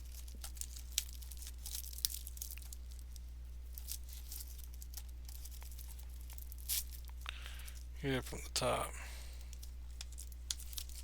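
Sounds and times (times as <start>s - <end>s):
plastic wrap tearing: 0.0s - 7.9s, 9.5s - 11.0s
plastic wrap crinkling: 0.0s - 8.0s, 9.4s - 11.0s.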